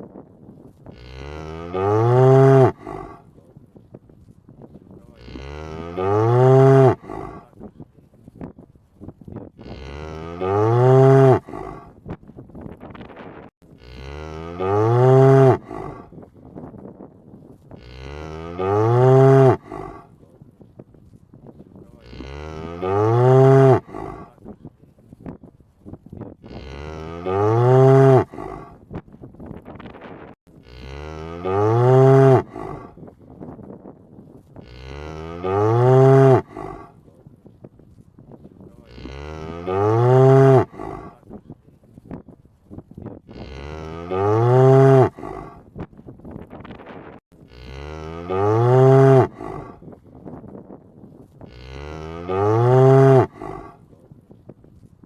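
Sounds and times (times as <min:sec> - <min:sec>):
cow mooing: 0:00.9 - 0:03.2, 0:05.1 - 0:07.5, 0:09.6 - 0:11.9, 0:13.8 - 0:16.1, 0:17.8 - 0:20.1, 0:22.0 - 0:24.4, 0:26.4 - 0:28.8, 0:30.6 - 0:33.0, 0:34.6 - 0:37.0, 0:38.8 - 0:41.2, 0:43.3 - 0:45.6, 0:47.5 - 0:49.8, 0:51.5 - 0:53.8.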